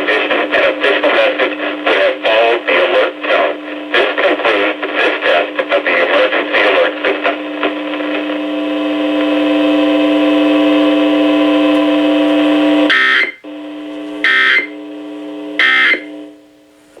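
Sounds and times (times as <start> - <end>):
buzzing alert tone: 10.0 - 16.3
data tone bursts: 11.4 - 13.6, 14.2 - 16.3.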